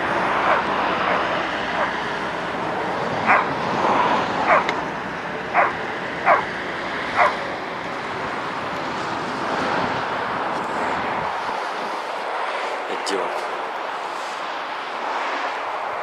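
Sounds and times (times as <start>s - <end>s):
steady background noise: 0.0s - 16.0s
dog barking: 0.5s - 1.9s, 3.2s - 3.5s, 4.5s - 4.7s, 5.6s - 6.5s, 7.2s - 7.4s.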